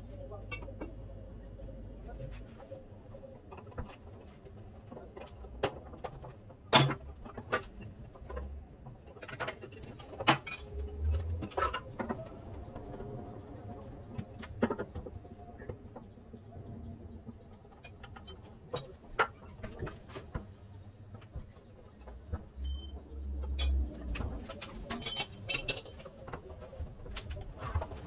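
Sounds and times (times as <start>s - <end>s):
clicks and knocks of tools: 18.0s - 20.5s.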